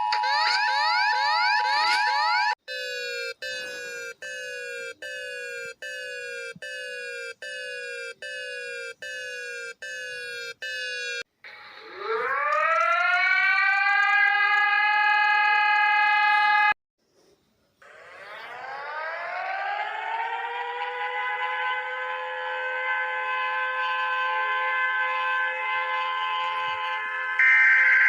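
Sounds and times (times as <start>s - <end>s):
civil defense siren wailing: 0.0s - 10.2s, 11.8s - 16.7s, 17.8s - 28.0s
short alarm tone blasts: 2.7s - 11.2s.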